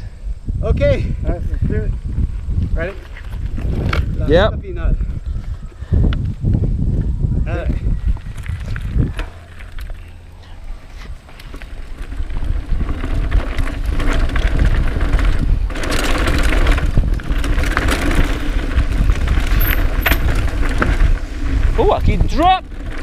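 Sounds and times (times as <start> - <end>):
wind rumbling on microphone: 0.0 - 23.0
bike rattling: 1.0 - 23.0
tyres over dirt and rocks: 5.1 - 23.0.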